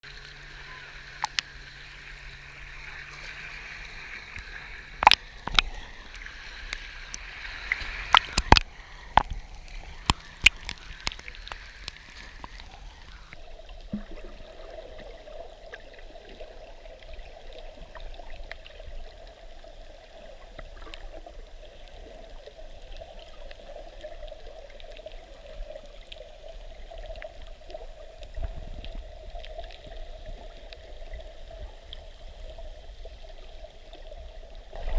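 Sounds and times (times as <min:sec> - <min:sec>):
sea water splashing: 0:00.0 - 0:34.9
underwater wash: 0:00.0 - 0:34.9
faint clicks underwater: 0:01.2 - 0:01.6, 0:04.3 - 0:14.4, 0:20.5 - 0:21.3, 0:23.0 - 0:32.6.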